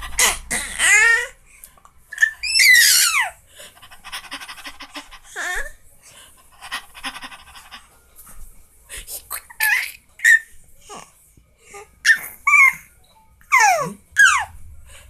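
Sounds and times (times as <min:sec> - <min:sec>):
baby squealing: 0:00.2 - 0:01.3, 0:02.1 - 0:03.4, 0:09.4 - 0:10.5, 0:12.1 - 0:12.9, 0:13.5 - 0:14.6
baby cooing: 0:00.2 - 0:01.4
baby panting: 0:03.5 - 0:08.0.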